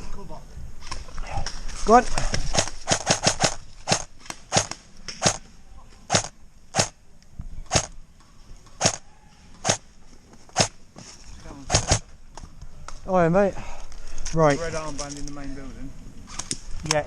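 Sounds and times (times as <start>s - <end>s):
airsoft gun shots: 2.5s - 5.4s, 6.1s - 7.0s, 7.7s - 8.0s, 8.8s - 9.0s, 9.6s - 9.8s, 10.6s - 10.8s, 11.7s - 12.1s.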